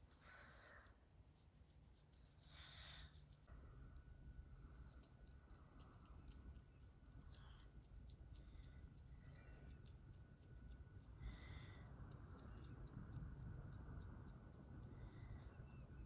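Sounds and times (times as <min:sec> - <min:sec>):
fingernails scratching scalp: 0:01.3 - 0:03.5.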